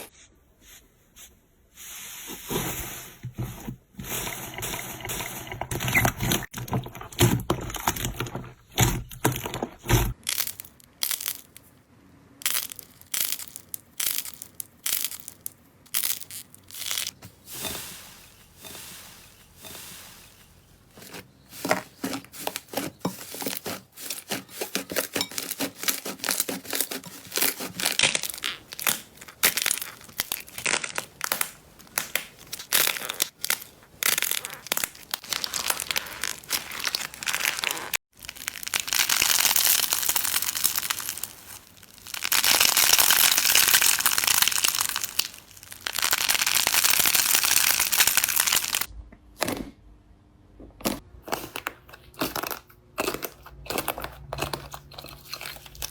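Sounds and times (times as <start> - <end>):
steady crunching: 12.5 - 46.8.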